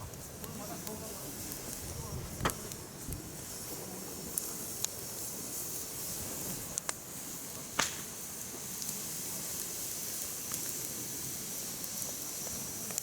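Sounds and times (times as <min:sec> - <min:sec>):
firewood burning with crackles: 0:00.0 - 0:13.0.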